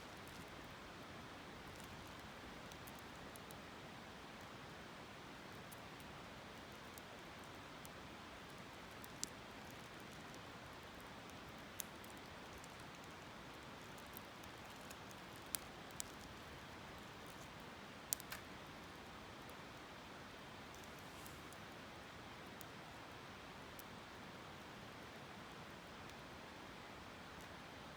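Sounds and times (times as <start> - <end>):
campfire crackling and popping: 13.8 - 19.4.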